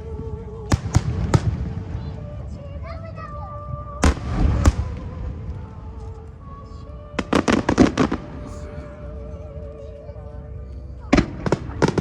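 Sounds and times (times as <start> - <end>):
fireworks crackling: 0.0 - 6.4, 7.1 - 9.0, 11.1 - 12.0
background music with sustained tones: 0.0 - 12.0
fireworks banging: 4.0 - 5.6, 11.1 - 12.0.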